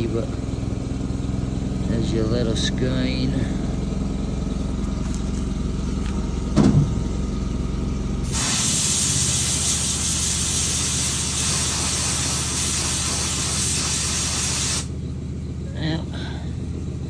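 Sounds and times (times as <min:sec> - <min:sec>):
low engine hum: 0:00.0 - 0:17.0
spray hissing: 0:08.2 - 0:14.9.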